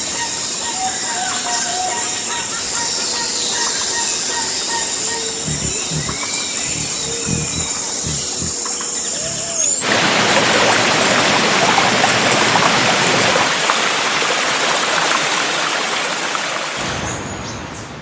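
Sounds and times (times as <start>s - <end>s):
bird call: 0.2s - 9.9s
dense rush of water: 9.8s - 17.4s.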